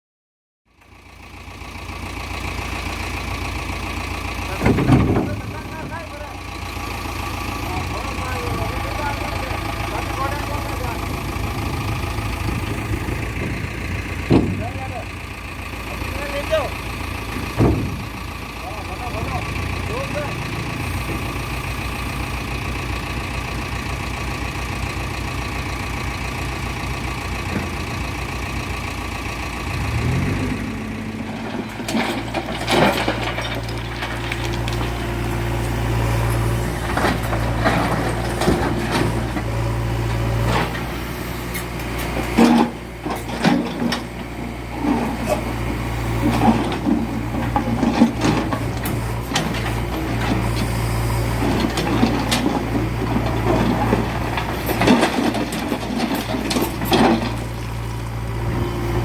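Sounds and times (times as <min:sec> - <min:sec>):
diesel engine idling and revving: 0:00.7 - 0:59.0
machine clanks and knocks: 0:04.5 - 0:06.2, 0:12.4 - 0:15.2, 0:17.3 - 0:18.3, 0:31.2 - 0:35.1, 0:36.8 - 0:39.5, 0:42.0 - 0:45.5, 0:46.2 - 0:57.8.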